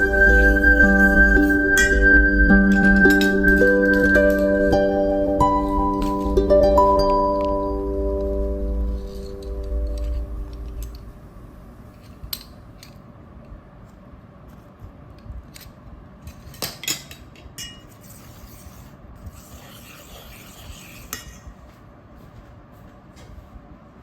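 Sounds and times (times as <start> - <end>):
background music: 0.0 - 11.4
utensil scraping a bowl: 17.9 - 21.5.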